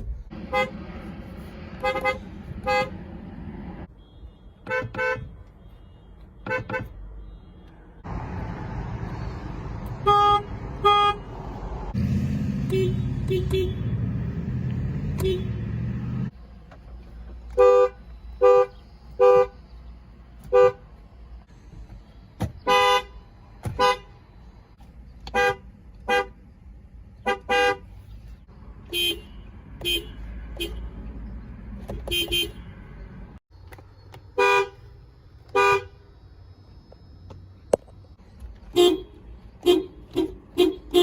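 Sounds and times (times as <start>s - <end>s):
two-tone car horn toots: 10.0s - 11.2s, 12.6s - 14.0s, 15.1s - 15.7s, 28.9s - 30.9s, 32.1s - 32.7s, 38.7s - 41.0s.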